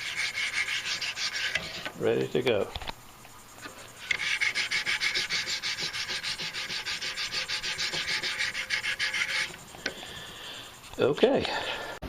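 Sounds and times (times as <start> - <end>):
knife sharpener rasping on blade: 0.0 - 1.8, 4.0 - 9.6.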